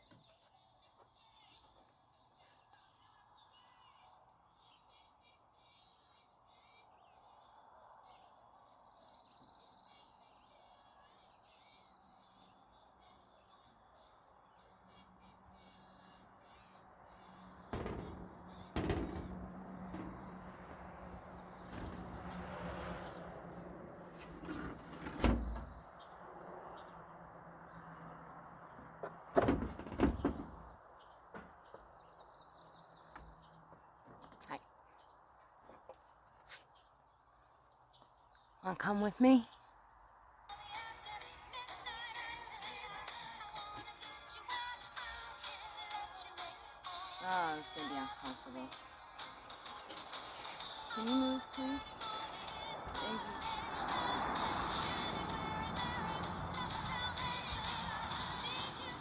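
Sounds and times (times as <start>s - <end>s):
birds chirping faintly: 0.0s - 59.0s
knocks or thumps: 17.7s - 22.4s.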